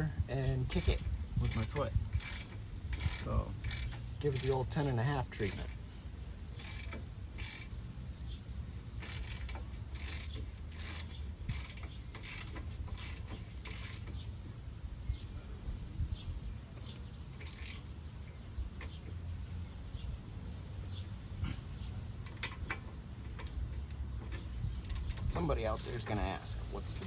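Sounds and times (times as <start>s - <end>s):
hand ratchet clicking: 0.6s - 5.8s, 6.6s - 7.8s, 9.0s - 14.2s, 16.8s - 17.9s, 22.2s - 27.0s.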